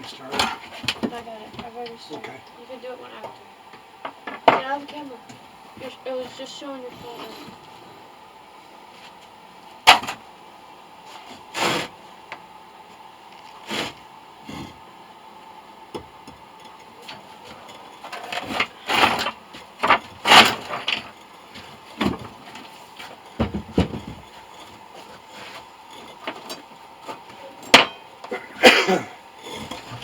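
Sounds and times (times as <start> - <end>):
faint steady hum: 0.0 - 30.0
knocks and scraping handling noises: 16.7 - 27.9.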